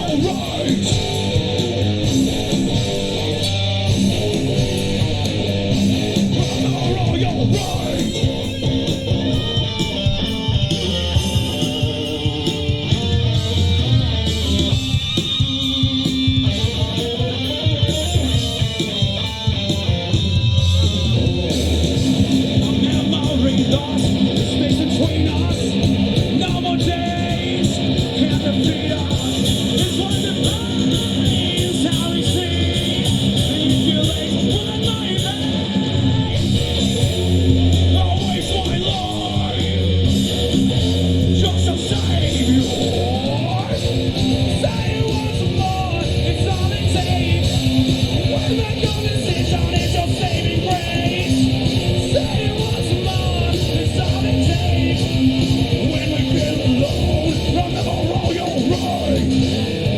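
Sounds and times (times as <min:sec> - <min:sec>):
rock band playing live: 0:00.0 - 0:59.9.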